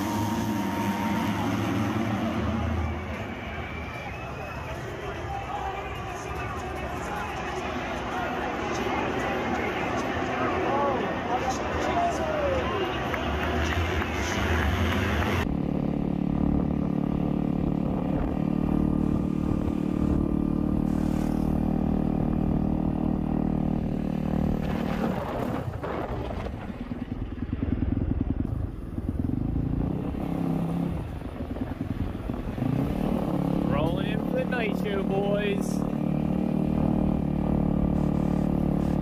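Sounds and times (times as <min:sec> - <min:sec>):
dirt bike engine running: 0:12.7 - 0:39.0.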